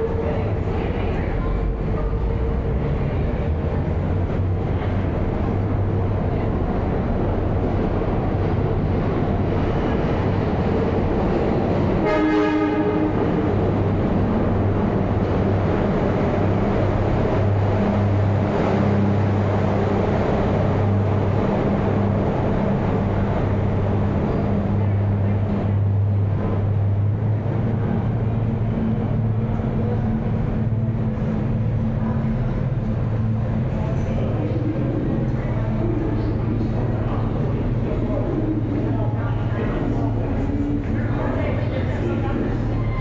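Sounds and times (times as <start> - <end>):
subway train rail rumble: 0.0 - 43.0
horn-like pitched tone: 12.0 - 13.1.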